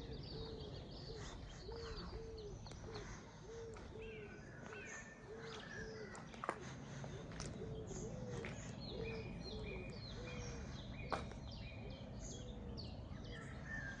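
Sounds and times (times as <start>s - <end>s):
birds calling: 0.0s - 14.0s.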